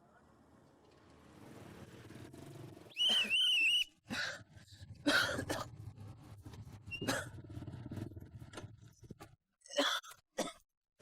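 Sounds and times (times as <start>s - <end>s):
high wavering whistle tone: 2.9s - 3.9s.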